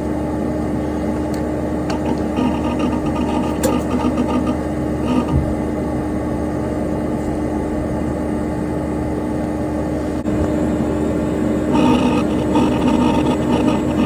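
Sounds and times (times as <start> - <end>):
computer fan whirring hum: 0.0 - 14.0.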